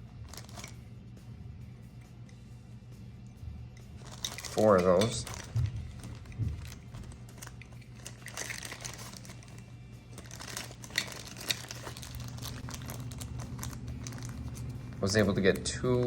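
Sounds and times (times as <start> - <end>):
steady low hum: 0.0 - 16.0
plastic bags crinkling: 0.2 - 0.8, 4.0 - 16.0.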